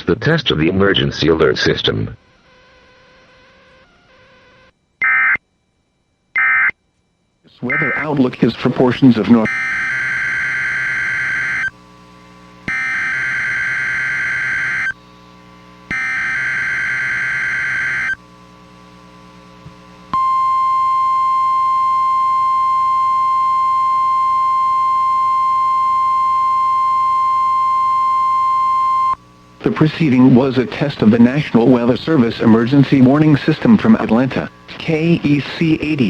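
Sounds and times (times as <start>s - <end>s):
warbling data bursts: 0.8s - 5.4s, 7.6s - 11.7s
steady high alarm tone: 4.4s - 5.4s, 6.3s - 6.8s, 7.5s - 11.7s, 12.7s - 15.0s, 15.9s - 18.2s, 20.2s - 29.2s.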